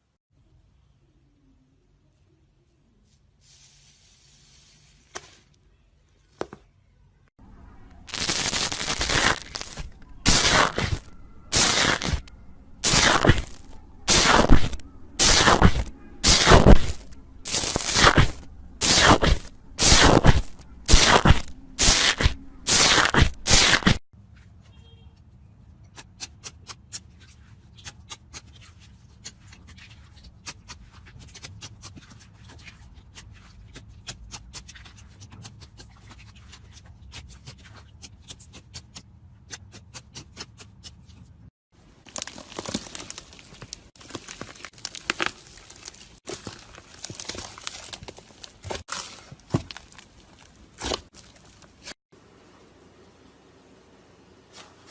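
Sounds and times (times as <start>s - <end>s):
slime squelching and crackling: 8.0s - 24.0s, 41.9s - 52.0s.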